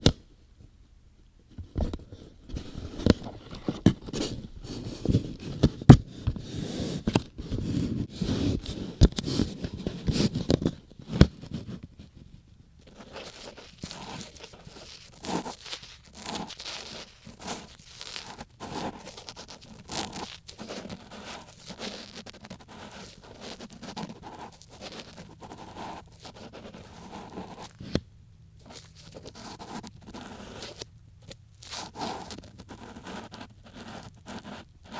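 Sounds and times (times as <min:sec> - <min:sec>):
ear pick scraping and rubbing: 0:12.8 - 0:34.9.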